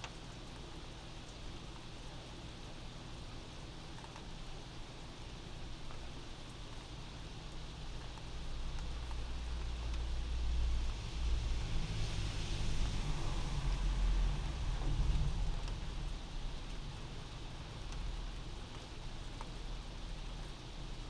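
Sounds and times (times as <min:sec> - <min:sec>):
steady rain: 0:00.0 - 0:21.0
car passing on wet street: 0:09.0 - 0:18.7.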